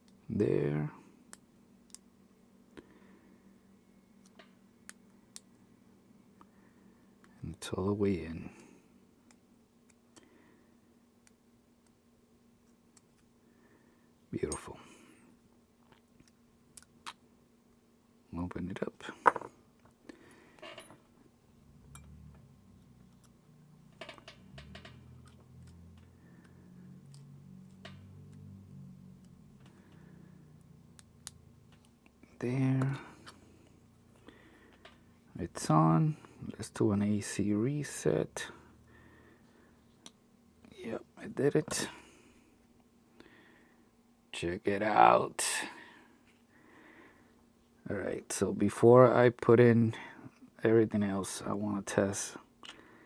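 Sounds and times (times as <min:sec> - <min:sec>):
faint sharp clicks of watch parts: 0:01.2 - 0:02.1, 0:04.1 - 0:05.7, 0:08.6 - 0:10.4, 0:11.2 - 0:12.0, 0:12.6 - 0:13.3, 0:15.8 - 0:17.8, 0:21.9 - 0:32.2, 0:32.8 - 0:35.1, 0:52.6 - 0:52.8
small tools clicking on watch parts: 0:23.1 - 0:28.4.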